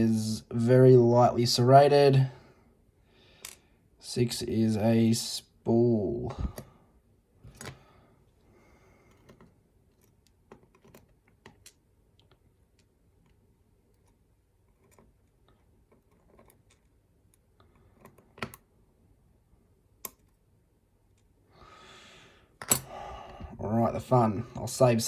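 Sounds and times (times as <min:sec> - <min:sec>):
small metal parts clicking: 0:09.1 - 0:18.6.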